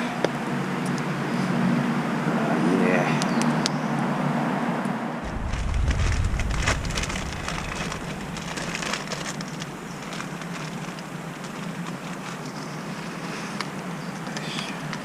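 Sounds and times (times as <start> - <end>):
low rumble: 5.2 - 10.2
campfire crackling and popping: 5.2 - 12.0.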